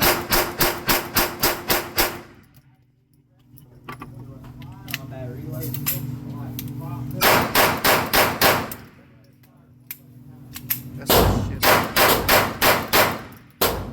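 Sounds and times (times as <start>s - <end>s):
rapid gunshots: 0.0s - 2.4s, 7.2s - 8.9s, 11.1s - 13.9s
low steady hum: 0.0s - 13.9s.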